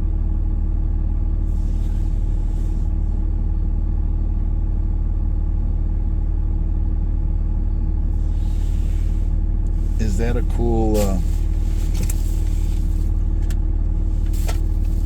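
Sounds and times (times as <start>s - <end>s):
vehicle engine rumble inside cabin: 0.2s - 15.0s
faint hum tones: 8.0s - 15.0s.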